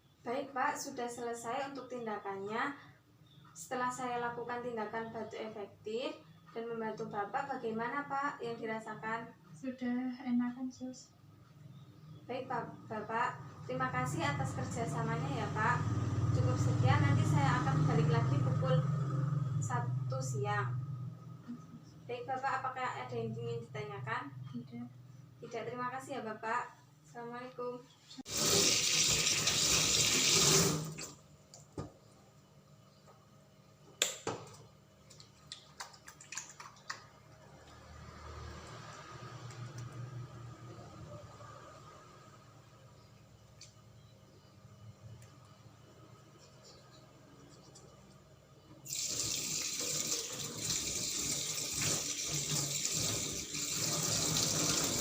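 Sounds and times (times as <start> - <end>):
tap water running into sink: 28.3 - 31.2, 48.9 - 55.0.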